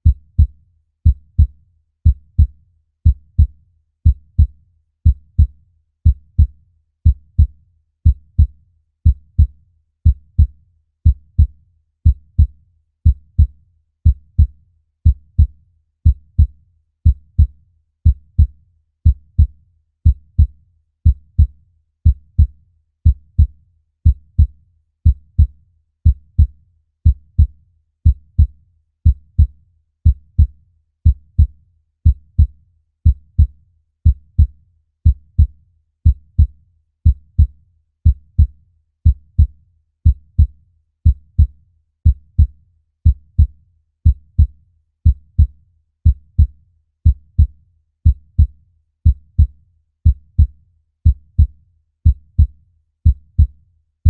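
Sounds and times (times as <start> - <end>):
heartbeat thumps: 50.1 - 50.5, 53.1 - 53.5.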